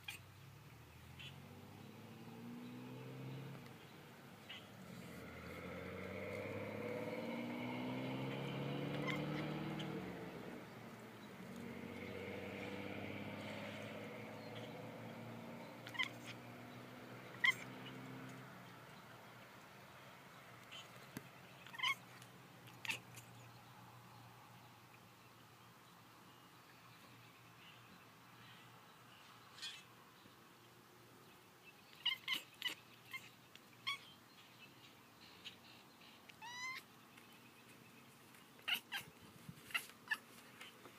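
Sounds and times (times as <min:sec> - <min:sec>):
cat chirping: 0:08.9 - 0:10.0, 0:15.8 - 0:16.4, 0:17.4 - 0:18.0, 0:21.6 - 0:22.1, 0:22.7 - 0:23.3, 0:29.6 - 0:29.8, 0:32.0 - 0:34.1, 0:36.3 - 0:36.9, 0:38.6 - 0:40.7.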